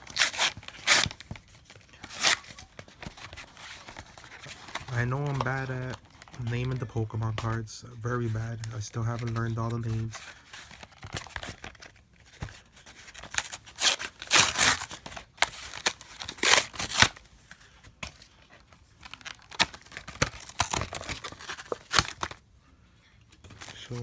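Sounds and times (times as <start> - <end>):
blister pack tearing: 0.0 - 1.2, 2.0 - 6.9, 13.1 - 17.2, 19.0 - 22.4.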